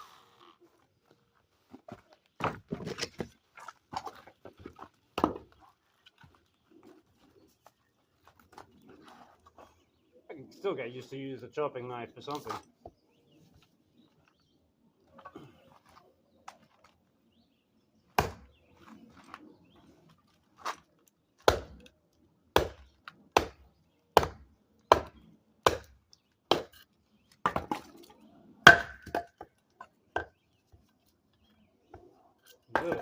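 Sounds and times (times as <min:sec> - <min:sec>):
knife chopping into wood: 0:18.2 - 0:18.5, 0:21.4 - 0:21.8, 0:22.6 - 0:23.6, 0:24.2 - 0:26.8.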